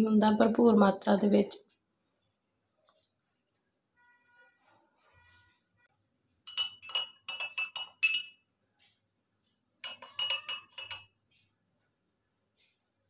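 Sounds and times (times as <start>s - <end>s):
metal spoon clinking against cup: 6.5s - 8.5s, 9.8s - 11.2s.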